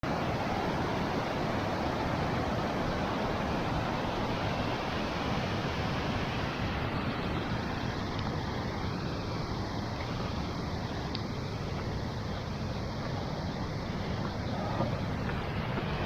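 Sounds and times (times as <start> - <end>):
waterfall rushing: 0.0 - 16.0.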